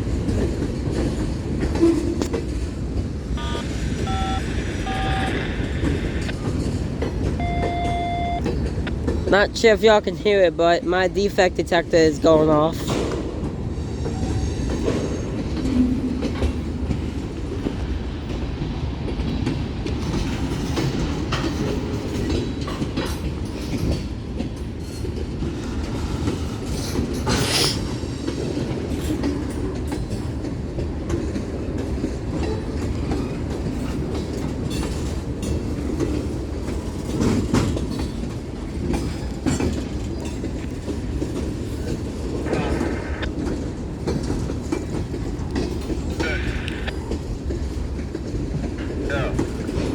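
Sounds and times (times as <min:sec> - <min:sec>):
wheel clicks and clanks on rails: 0:00.0 - 0:03.1, 0:12.9 - 0:42.4, 0:47.0 - 0:49.9
freight train rolling past: 0:00.0 - 0:46.3.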